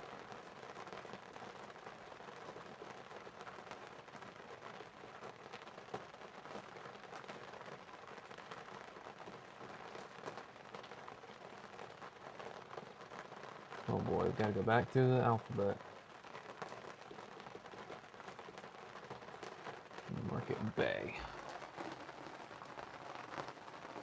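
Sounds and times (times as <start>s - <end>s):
faint rain: 0.0s - 24.0s.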